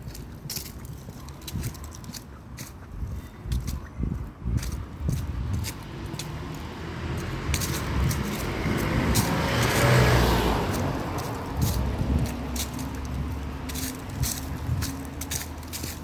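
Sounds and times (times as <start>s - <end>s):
footsteps on ground: 0.0s - 16.0s
car passing by: 5.8s - 16.0s.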